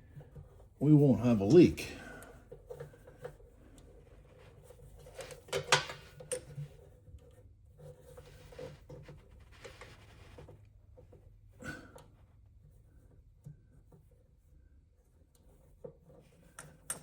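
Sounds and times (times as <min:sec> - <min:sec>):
handling clicks and rubs: 0:02.6 - 0:07.0, 0:07.8 - 0:11.1.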